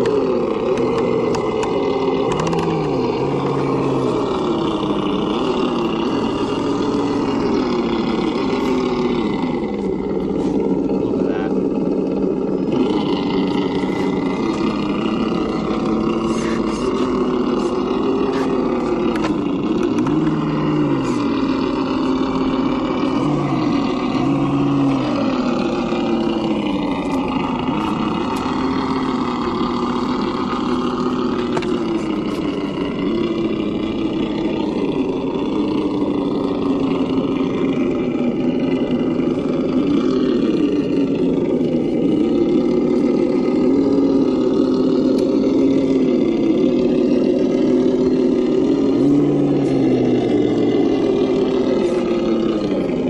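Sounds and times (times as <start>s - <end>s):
toy car motor whining: 0.0s - 53.0s.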